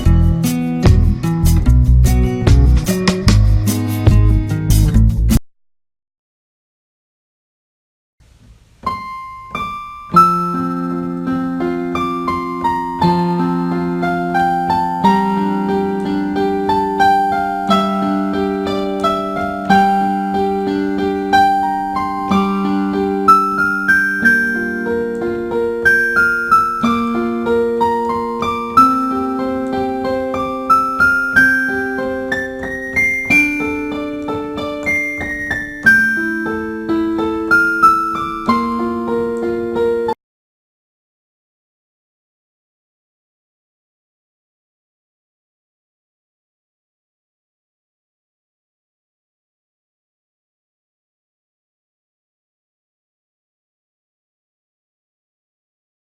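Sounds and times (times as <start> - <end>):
piano music: 0.0 - 5.4, 8.8 - 40.2.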